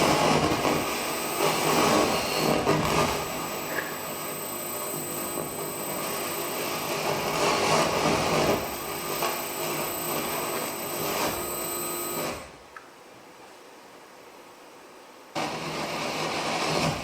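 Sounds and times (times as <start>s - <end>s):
faint steady background noise: 12.2s - 16.3s.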